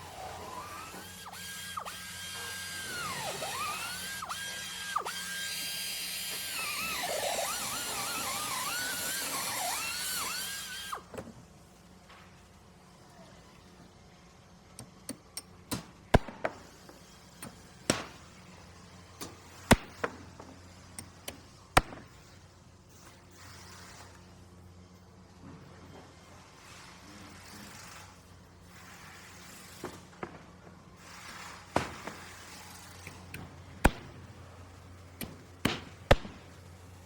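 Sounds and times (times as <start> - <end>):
power drill whining: 0.0 - 11.1.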